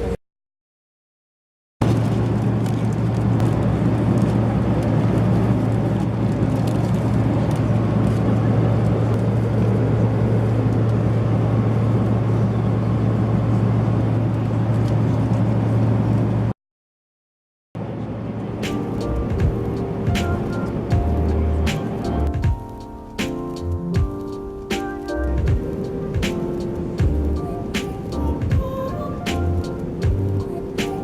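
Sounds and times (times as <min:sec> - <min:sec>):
rushing road noise: 0:01.8 - 0:16.5, 0:17.8 - 0:31.0
vehicle cabin hum: 0:17.8 - 0:31.0.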